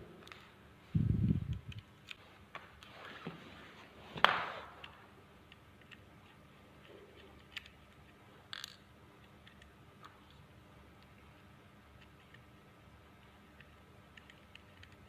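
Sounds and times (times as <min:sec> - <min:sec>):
wire handling noise: 0:00.2 - 0:11.2.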